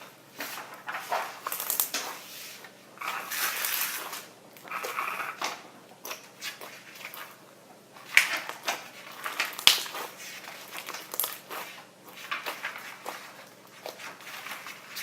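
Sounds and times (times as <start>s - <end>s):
slime crackling and crunching: 9.4s - 13.2s.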